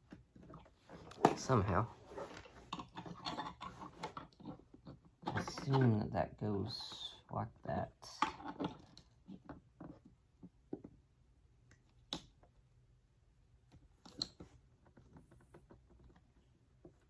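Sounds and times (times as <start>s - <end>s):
vacuum parts clicking and knocking: 0.0s - 6.1s.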